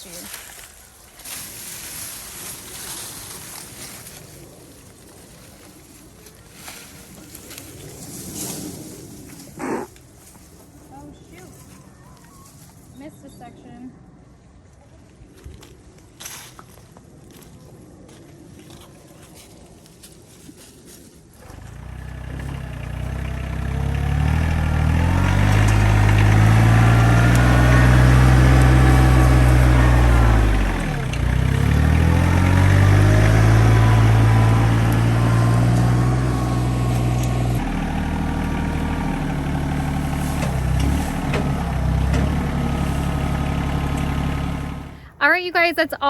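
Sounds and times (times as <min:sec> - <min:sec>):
engine starting and running: 0:21.4 - 0:45.2.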